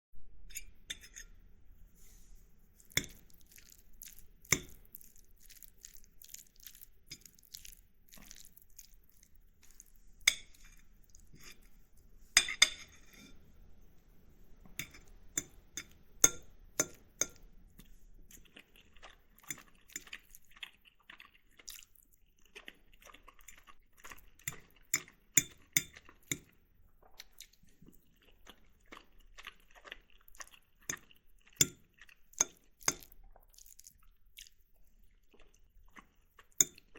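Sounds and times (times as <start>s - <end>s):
soft chewing: 0.6s - 36.9s
fork clinking on ceramic plate: 12.4s - 13.4s.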